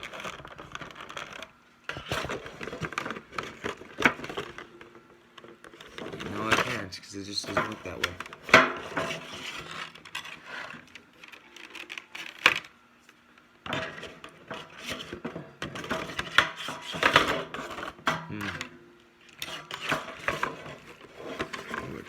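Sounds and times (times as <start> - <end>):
metal tin and plastic tray clattering: 5.8 - 10.4, 13.7 - 18.7.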